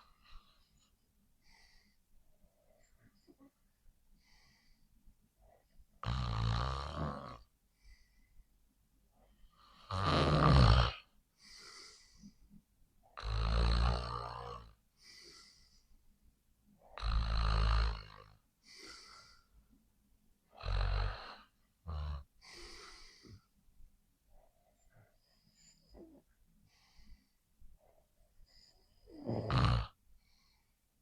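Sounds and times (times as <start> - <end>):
person snoring: 6.0 - 7.4, 9.8 - 11.0, 13.2 - 14.7, 20.5 - 23.3, 29.1 - 30.0.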